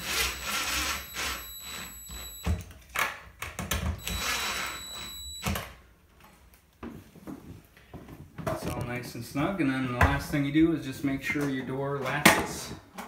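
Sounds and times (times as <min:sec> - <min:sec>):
cordless drill motor whining: 0:00.0 - 0:02.6, 0:04.0 - 0:05.6.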